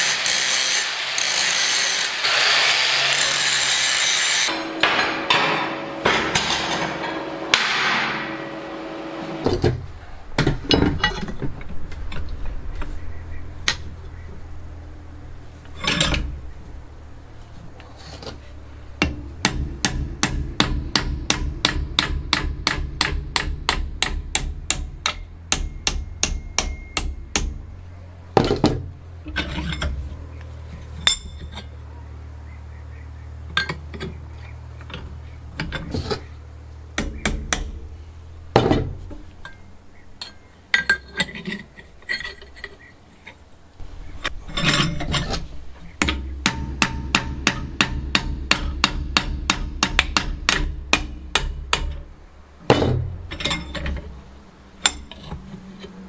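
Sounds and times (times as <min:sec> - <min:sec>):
hammer striking steel: 0:00.0 - 0:11.3, 0:19.0 - 0:30.0, 0:37.0 - 0:39.6, 0:44.2 - 0:54.2
low machine hum: 0:04.5 - 0:56.0.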